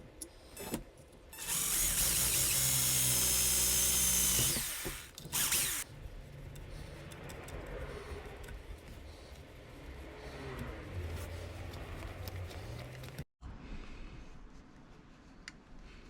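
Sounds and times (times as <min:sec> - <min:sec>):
small electric power tool running: 0:01.4 - 0:05.8.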